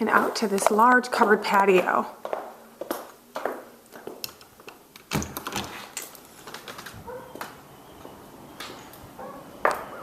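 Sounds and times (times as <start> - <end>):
door latch clicks: 4.3 - 5.8.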